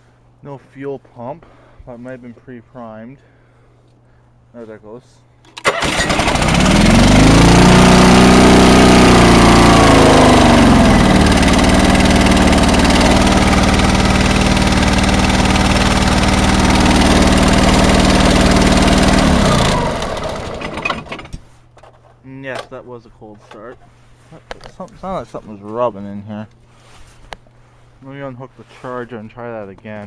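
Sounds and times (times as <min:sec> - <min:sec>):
garden tractor engine running: 0:05.6 - 0:21.4.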